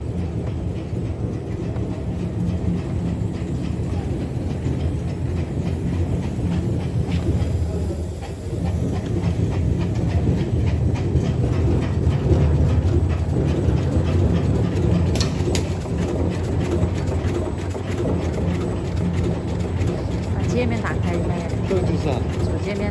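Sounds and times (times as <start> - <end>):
pleating machine clattering: 0.0 - 22.9.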